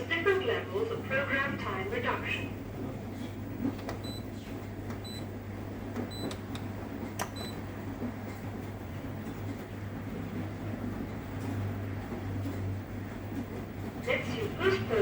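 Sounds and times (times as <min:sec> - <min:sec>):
washing machine panel beeps: 0:04.0 - 0:04.3, 0:05.0 - 0:05.3, 0:06.0 - 0:06.6, 0:07.2 - 0:07.7.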